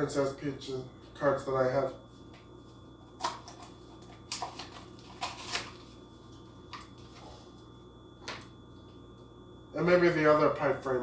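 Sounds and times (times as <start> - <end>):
low room hum: 0.0 - 11.0
plastic packaging rustling and clicking: 3.2 - 5.9.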